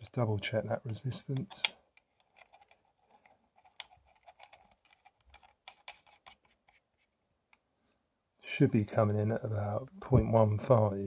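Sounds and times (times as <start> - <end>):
small clicks and light scraping: 0.9 - 7.7.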